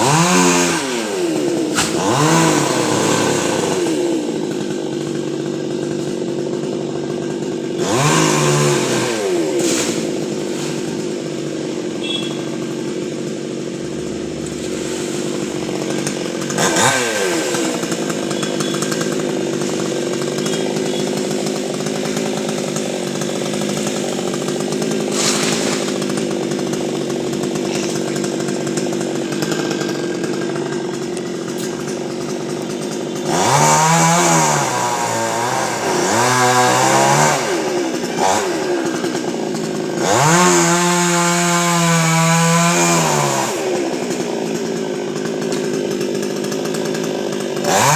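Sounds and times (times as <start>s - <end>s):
chainsaw revving: 0.0s - 47.9s.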